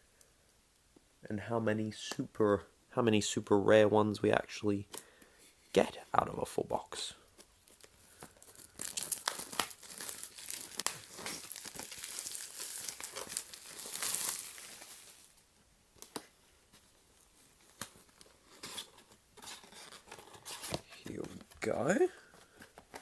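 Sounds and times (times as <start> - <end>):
packaging crinkling and tearing: 7.4 - 16.4, 17.0 - 23.0.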